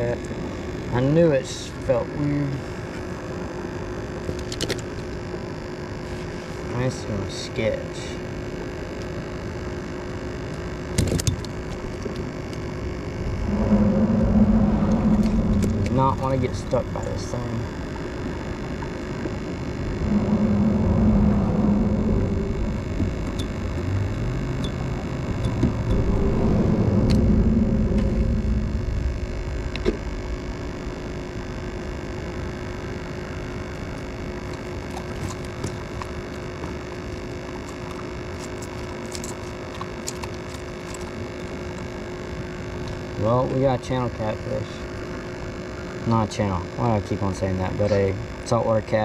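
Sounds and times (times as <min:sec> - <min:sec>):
steady hum: 0:00.0 - 0:49.0
traffic rumble on bridge: 0:13.1 - 0:16.7, 0:19.6 - 0:32.8.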